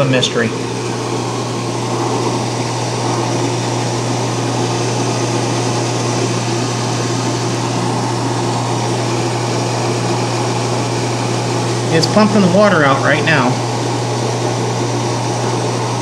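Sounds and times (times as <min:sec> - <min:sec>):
drain pump humming: 0:00.0 - 0:16.0.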